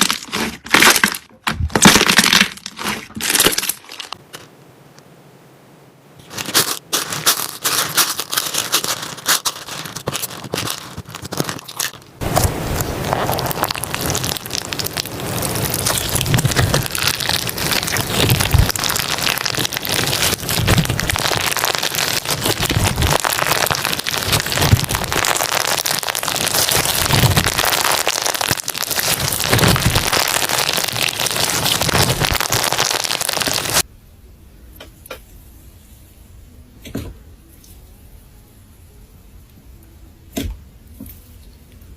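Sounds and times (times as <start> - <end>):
slime crackling and popping: 0.0 - 4.2, 6.3 - 33.9
soft slime squish: 6.3 - 33.8.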